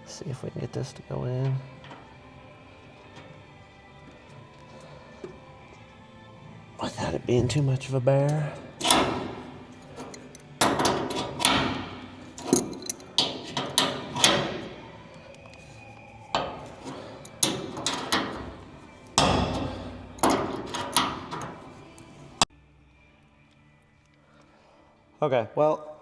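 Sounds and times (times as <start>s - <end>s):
sharp metallic knocks: 10.6s - 14.7s, 19.2s - 21.4s.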